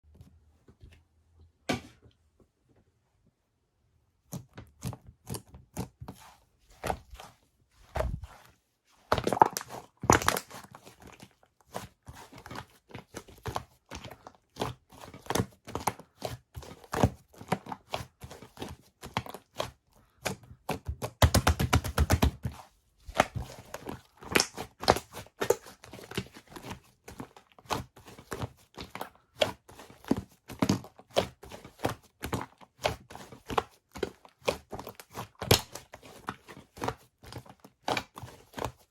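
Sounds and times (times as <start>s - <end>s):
slime squished by hand: 9.1s - 11.2s.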